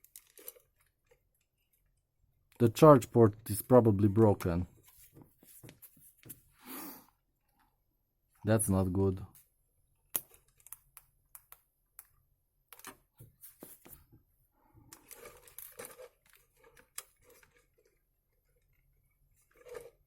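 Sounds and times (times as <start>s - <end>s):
plastic parts rustling: 0.0s - 1.9s, 14.9s - 20.0s.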